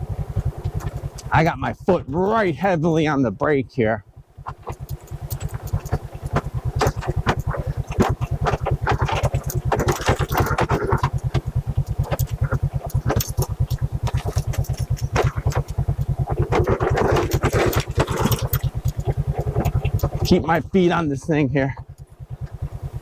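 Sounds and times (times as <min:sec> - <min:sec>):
motorcycle engine at low revs: 0:00.0 - 0:23.0
bike clicks and rattles: 0:00.1 - 0:02.5, 0:04.4 - 0:23.0
loose stones rattling: 0:04.5 - 0:20.5.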